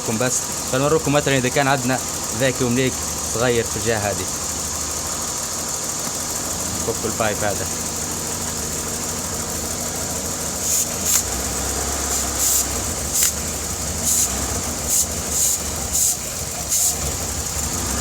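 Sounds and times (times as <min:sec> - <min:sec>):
car engine idling unevenly: 0:00.0 - 0:18.0
hissing bursts: 0:04.3 - 0:18.0.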